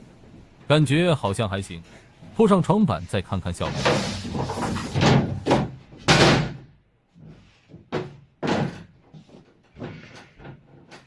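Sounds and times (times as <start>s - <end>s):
wooden boards knocking and thudding: 4.2s - 11.0s.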